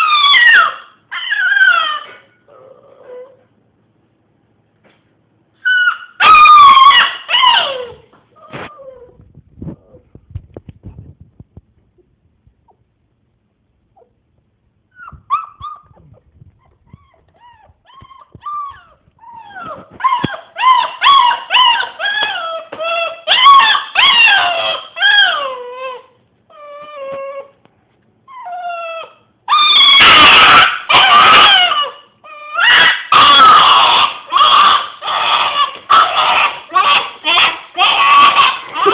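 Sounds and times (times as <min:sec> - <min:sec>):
dog screaming cries: 0:00.0 - 0:02.2, 0:05.6 - 0:08.9, 0:17.9 - 0:27.5, 0:28.4 - 0:38.9
dog whimpering: 0:00.0 - 0:03.5, 0:05.6 - 0:10.1, 0:14.9 - 0:27.6, 0:28.3 - 0:38.9
dog howling: 0:18.5 - 0:26.1, 0:28.6 - 0:38.9.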